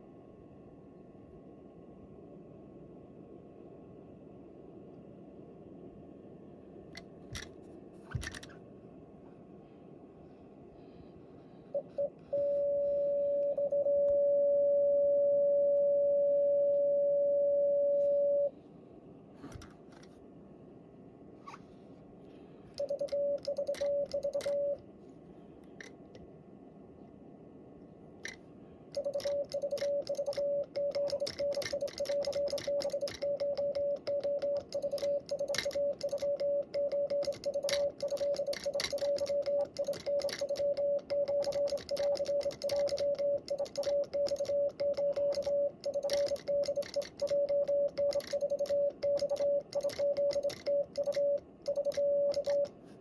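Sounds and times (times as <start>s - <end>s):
morse code beeps: 11.8s - 18.5s, 22.8s - 24.8s, 29.0s - 52.7s.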